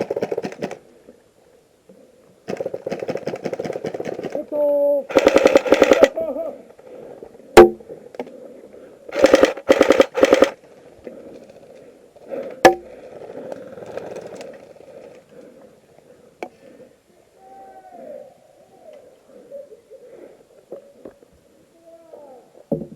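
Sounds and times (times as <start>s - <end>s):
airsoft rifle full-auto bursts: 0.0s - 0.8s, 2.5s - 4.4s, 5.1s - 6.2s, 9.1s - 10.6s.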